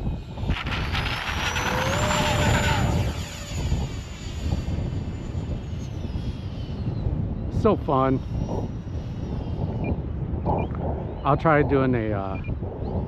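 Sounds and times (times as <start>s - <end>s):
model jet whining: 0.0s - 9.8s
wind rumbling on microphone: 0.0s - 13.0s.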